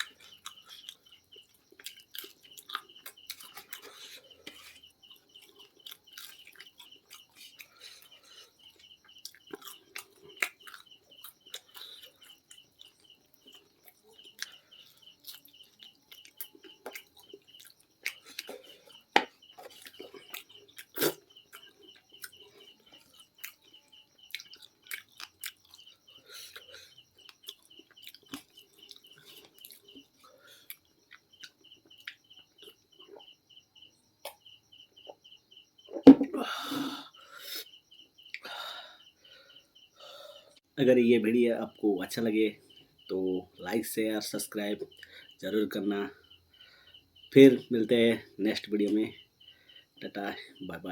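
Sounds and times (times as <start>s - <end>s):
chewing and crunching fried chicken: 0.0s - 33.4s.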